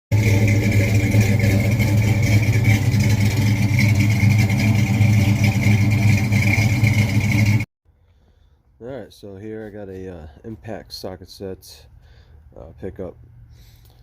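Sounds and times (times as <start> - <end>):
engine running with low hum: 0.1 - 7.7.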